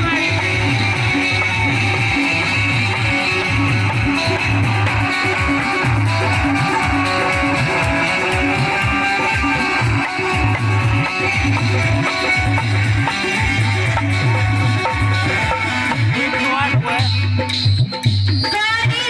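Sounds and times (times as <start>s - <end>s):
plucked-string melody: 0.0s - 17.1s
steady rhythmic beat: 0.0s - 19.0s.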